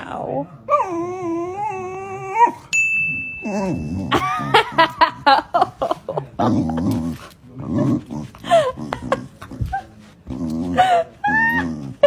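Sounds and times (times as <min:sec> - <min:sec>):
steady high-pitched tone: 0:02.8 - 0:04.6.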